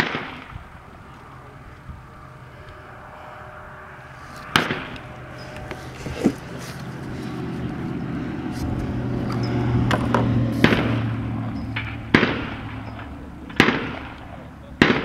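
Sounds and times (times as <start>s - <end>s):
rifle shot with echo: 0.0s - 0.8s, 4.5s - 5.1s, 10.6s - 11.2s, 11.8s - 15.0s.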